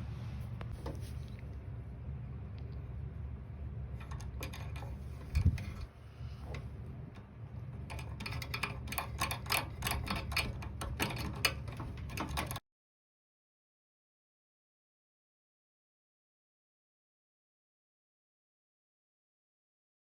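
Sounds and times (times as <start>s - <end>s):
microwave oven humming: 0.0s - 12.6s.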